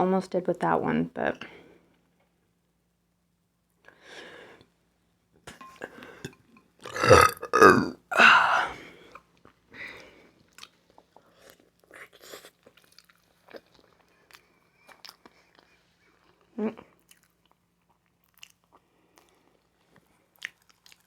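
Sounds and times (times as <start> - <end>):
woman burping loudly: 6.8 - 8.8
chewing and mouth sounds: 10.5 - 21.0.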